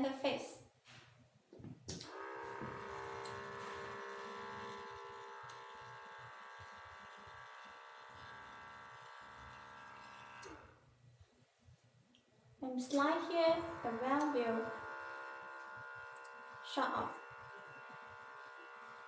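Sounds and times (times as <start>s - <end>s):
small geared motor buzzing: 2.1s - 10.8s, 13.1s - 19.0s.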